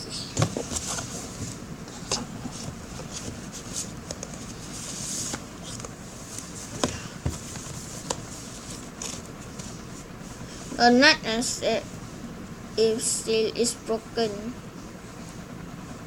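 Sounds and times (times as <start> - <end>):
cardboard rustle: 0.4 - 9.9.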